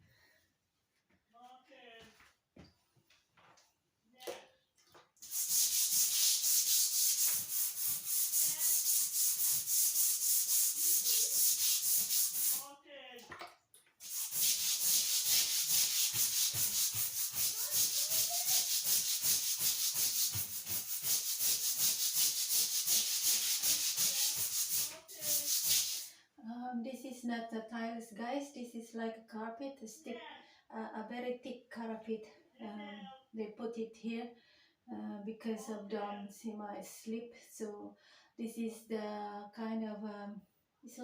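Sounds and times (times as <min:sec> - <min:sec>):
stiff brush scrubbing floor: 0:05.2 - 0:12.7, 0:14.0 - 0:26.1.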